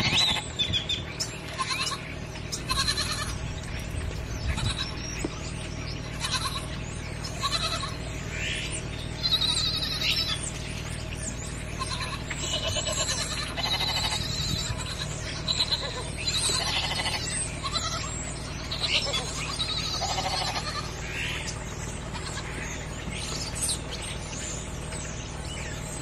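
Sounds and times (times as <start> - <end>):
goats bleating: 0.0 - 0.6, 1.4 - 3.4, 4.5 - 5.1, 6.0 - 8.0, 9.1 - 10.5, 11.8 - 23.1
steady low hum: 0.0 - 26.0.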